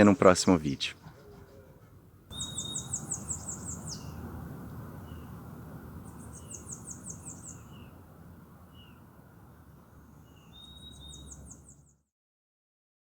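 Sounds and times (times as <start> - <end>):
small birds singing: 0.0 - 12.1
thin bird whistle: 2.3 - 4.2, 10.4 - 11.9.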